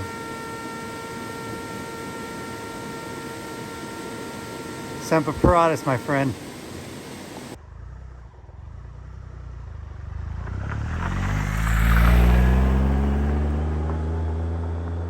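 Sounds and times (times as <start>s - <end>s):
engine revving up: 7.6s - 15.0s.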